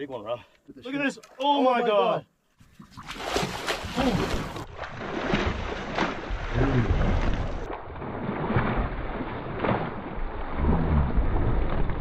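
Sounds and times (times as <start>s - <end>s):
boat engine rumble: 9.9s - 12.0s.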